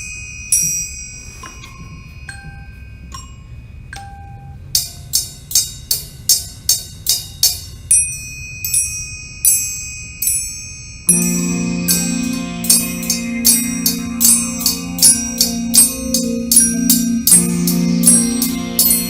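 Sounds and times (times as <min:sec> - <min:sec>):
bell-like mallet notes: 0:00.0 - 0:05.3, 0:07.4 - 0:19.0
held high tone: 0:10.7 - 0:19.0.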